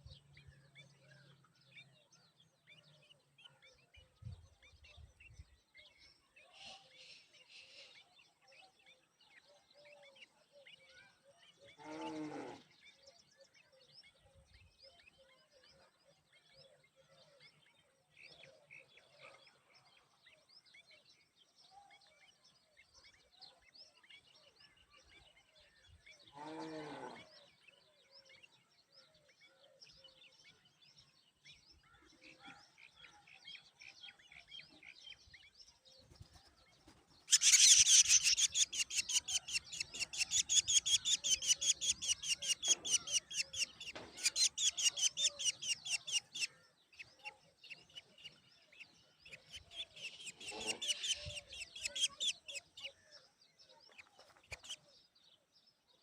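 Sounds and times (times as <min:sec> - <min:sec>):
faint bird chirps: 0:00.0 - 0:56.0
raspy nestling begging calls: 0:37.3 - 0:46.5, 0:50.2 - 0:52.3.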